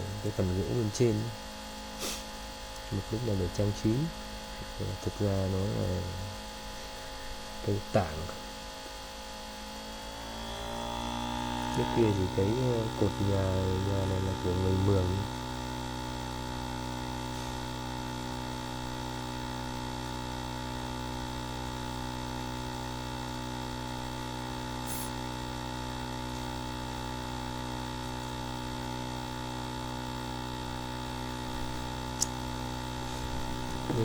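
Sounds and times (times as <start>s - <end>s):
electric sander humming: 9.6s - 20.2s, 22.4s - 34.0s.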